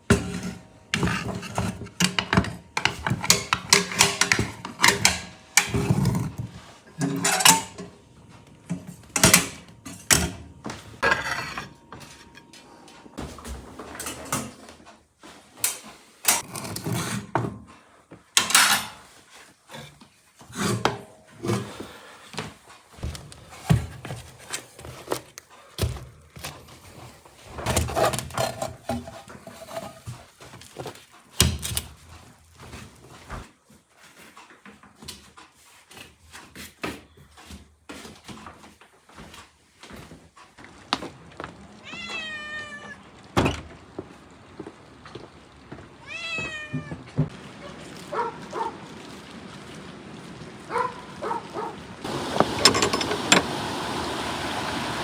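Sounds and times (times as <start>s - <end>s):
objects knocking and clattering: 0.0s - 8.0s, 52.0s - 53.7s.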